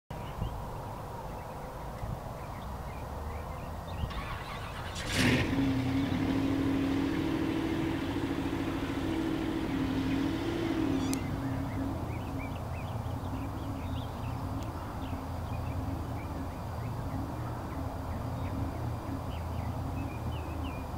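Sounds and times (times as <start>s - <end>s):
engine rumbling on dyno: 3.9s - 20.8s
engine sharp burst: 4.1s - 12.0s.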